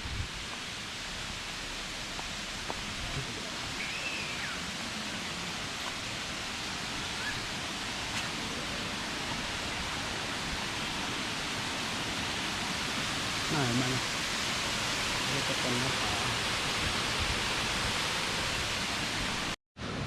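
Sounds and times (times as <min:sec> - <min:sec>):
waterfall rushing: 0:00.0 - 0:19.6.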